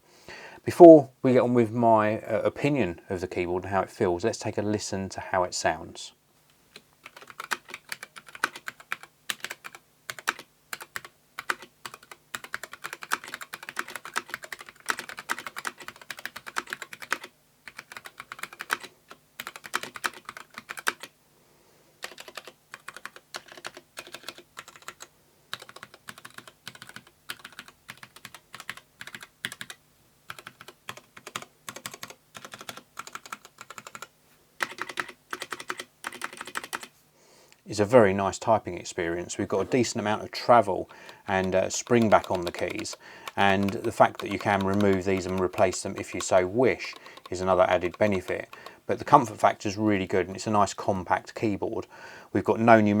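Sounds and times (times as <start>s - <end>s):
mechanical keyboard typing: 7.0s - 21.1s, 22.0s - 36.9s, 40.8s - 49.2s.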